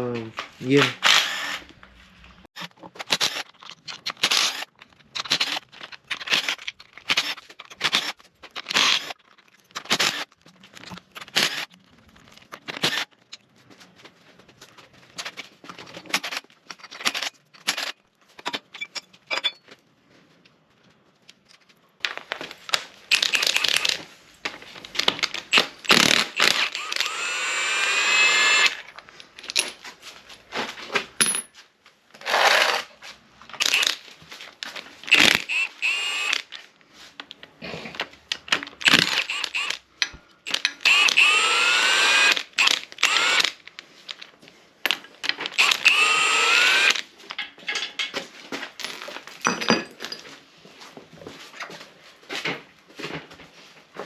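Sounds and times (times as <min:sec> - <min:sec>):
cordless power tool whining: 0:01.0 - 0:01.7, 0:23.1 - 0:24.0, 0:25.5 - 0:28.9, 0:33.6 - 0:34.0, 0:35.1 - 0:36.6, 0:38.8 - 0:39.8, 0:40.5 - 0:43.6, 0:45.5 - 0:47.1.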